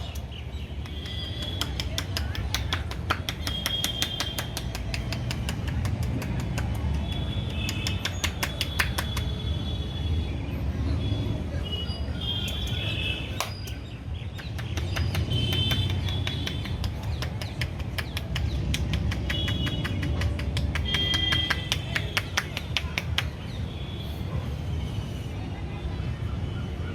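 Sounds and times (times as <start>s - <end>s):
hands tapping and slapping a head: 0.0s - 9.4s, 12.5s - 23.6s.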